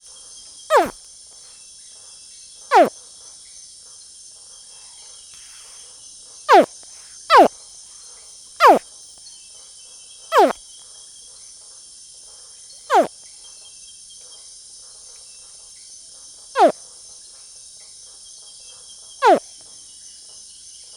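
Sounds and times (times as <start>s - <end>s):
caiman screaming: 0.7s - 0.9s, 2.7s - 2.9s.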